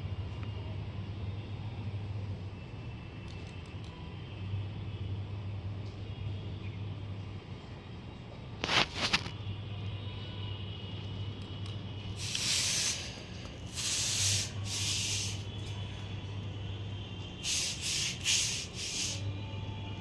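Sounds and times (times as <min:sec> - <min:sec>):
short hissing bursts: 0:12.2 - 0:15.6, 0:17.4 - 0:19.3.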